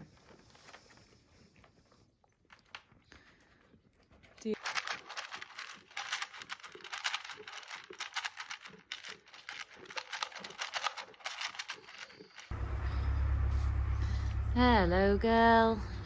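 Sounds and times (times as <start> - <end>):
dry crackling and crunching: 2.5 - 14.4.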